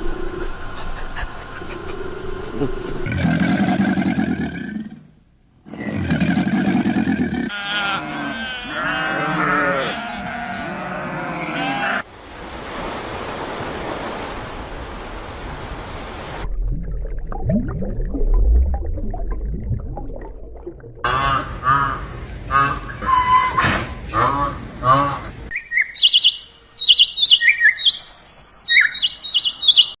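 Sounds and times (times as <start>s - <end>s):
low animal roar: 5.7s - 12.0s
sheep bleating: 7.5s - 12.0s
songbird warbling trills: 25.5s - 30.0s.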